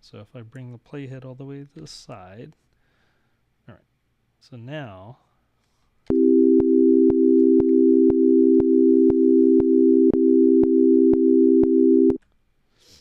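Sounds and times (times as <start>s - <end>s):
clicks at note onsets: 6.1s - 12.2s
synthesized sine tone chord: 6.1s - 12.2s.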